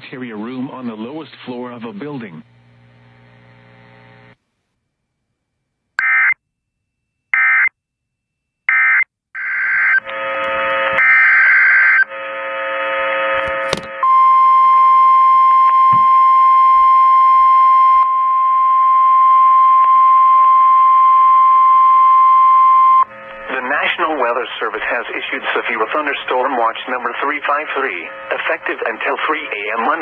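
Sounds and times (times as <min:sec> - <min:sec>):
radio static: 0:01.5 - 0:04.4, 0:23.1 - 0:30.0.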